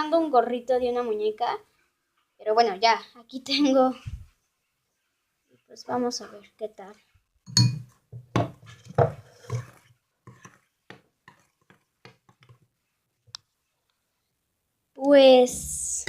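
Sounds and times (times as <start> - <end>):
glass container knocks: 7.5 - 9.1.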